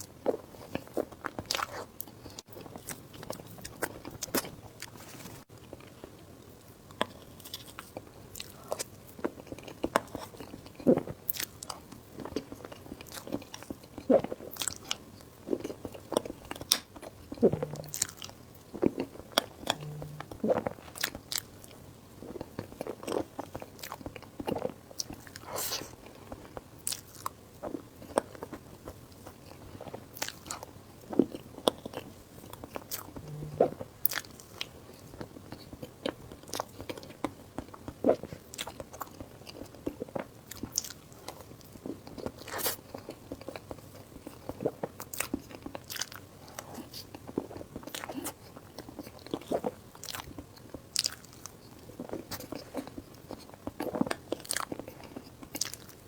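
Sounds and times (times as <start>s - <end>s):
person biting and chewing: 17.4s - 18.3s, 19.4s - 21.4s.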